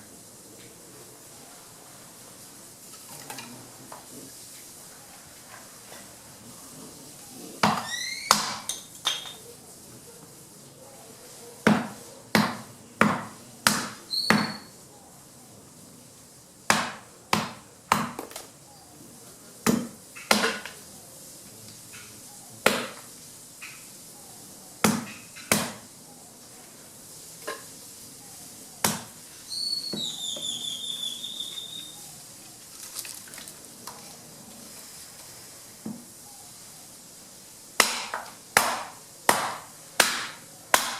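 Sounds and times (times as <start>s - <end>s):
blade chopping wood: 7.6s - 9.2s, 11.7s - 14.6s, 16.7s - 18.5s, 19.7s - 20.8s, 22.7s - 23.1s, 24.8s - 25.8s, 28.8s - 29.2s, 37.8s - 40.9s
high whistled chirping call: 7.7s - 9.5s, 14.1s - 14.8s, 29.4s - 32.4s.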